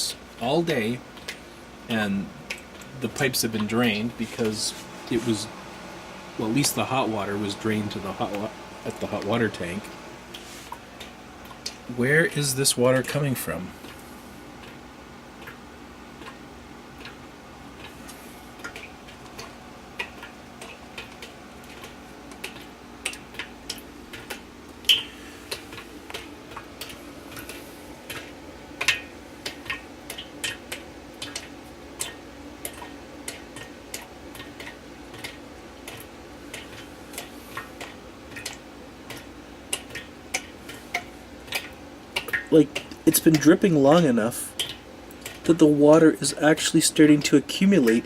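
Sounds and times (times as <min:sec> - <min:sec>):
water drops splashing: 0:17.8 - 0:48.0.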